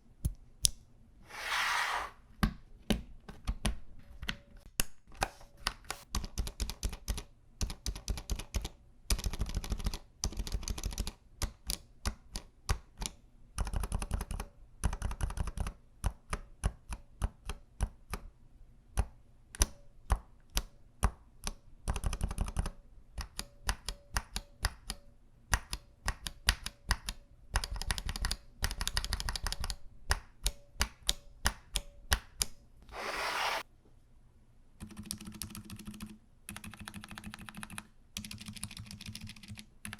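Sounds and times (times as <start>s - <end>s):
short scraping noise: 1.2s - 2.2s, 32.9s - 33.6s
muted keyboard typing: 5.7s - 18.2s, 21.4s - 25.0s, 25.7s - 29.8s, 34.8s - 39.9s.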